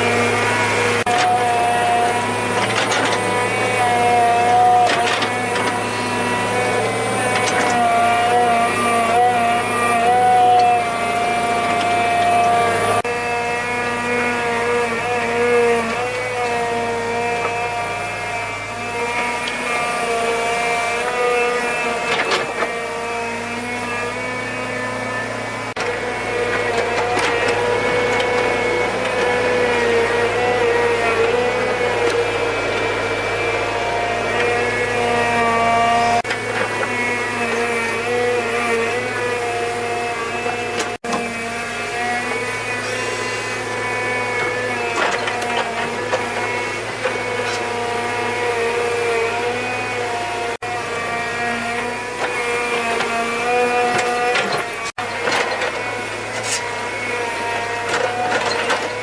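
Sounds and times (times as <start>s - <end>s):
power tool motor running: 0.0s - 59.0s.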